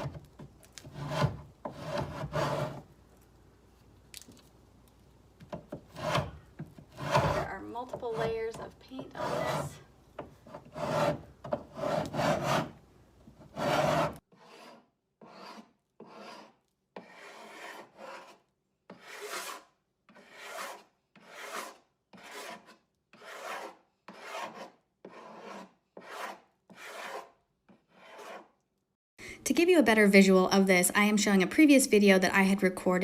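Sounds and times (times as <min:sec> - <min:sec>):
paint scraper rasping on wood: 0:00.8 - 0:02.9, 0:05.6 - 0:12.8, 0:13.4 - 0:28.6.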